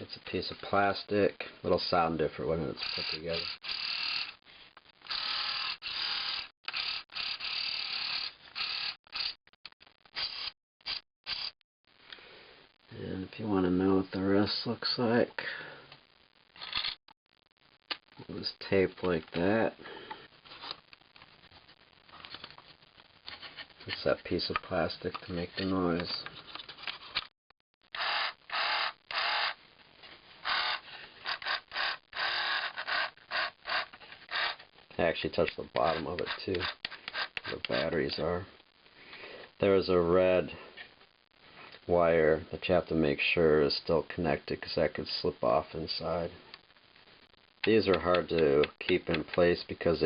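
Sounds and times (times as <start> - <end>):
toy motor ratcheting buzz: 2.8 - 4.4, 5.0 - 9.4, 10.2 - 11.6, 27.9 - 29.6, 30.4 - 34.6, 35.8 - 38.0.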